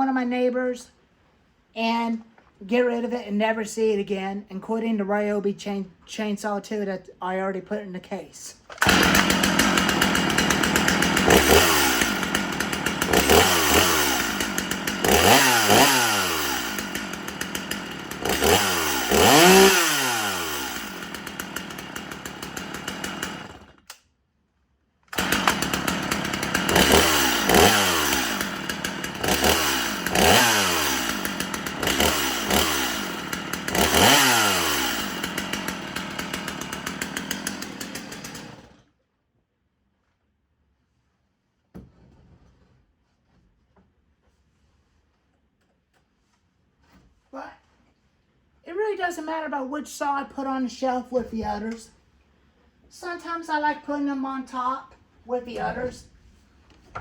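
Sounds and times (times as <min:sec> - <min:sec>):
chainsaw revving: 0:08.7 - 0:23.8, 0:25.1 - 0:38.8.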